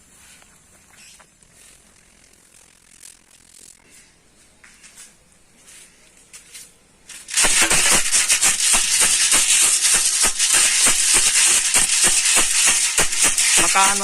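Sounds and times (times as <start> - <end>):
kibble rattling in a container: 7.1 - 14.0.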